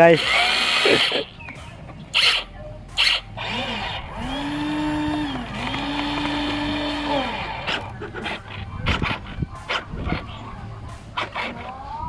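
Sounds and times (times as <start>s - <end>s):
electric motor whining: 0.0s - 1.3s, 2.1s - 10.3s.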